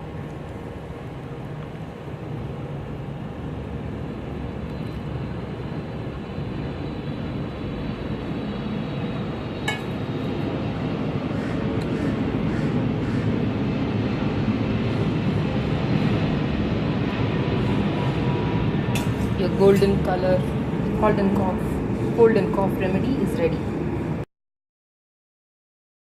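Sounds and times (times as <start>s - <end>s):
kitchen utensil clink: 9.7s - 10.0s.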